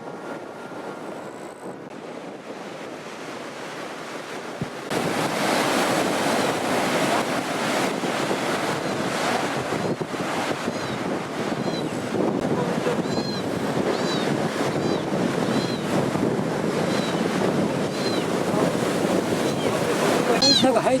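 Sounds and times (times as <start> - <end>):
ocean surf breaking: 0.0 - 21.0
wind buffeting microphone: 0.0 - 21.0.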